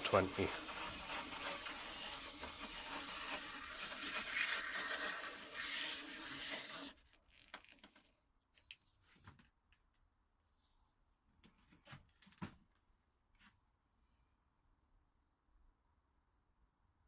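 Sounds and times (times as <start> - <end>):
sandpaper rubbing on wood: 0.0 - 7.0.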